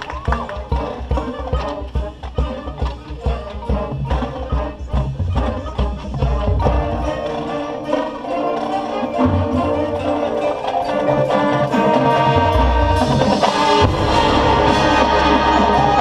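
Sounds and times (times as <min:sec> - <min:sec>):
drumline strokes: 0:00.0 - 0:16.0
brass holding chords: 0:06.0 - 0:16.0
bass drum hits: 0:13.8 - 0:16.0.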